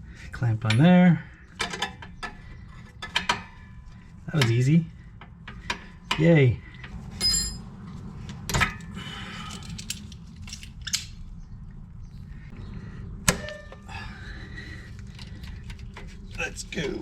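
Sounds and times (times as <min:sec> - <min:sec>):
steady low hum: 0:00.0 - 0:17.0
metal tools clinking: 0:07.2 - 0:07.7.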